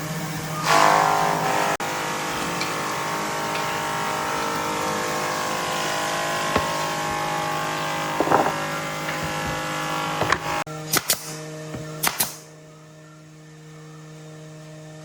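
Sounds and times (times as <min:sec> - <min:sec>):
power tool motor running: 0:00.6 - 0:10.7
rattle of knocks: 0:08.0 - 0:10.6.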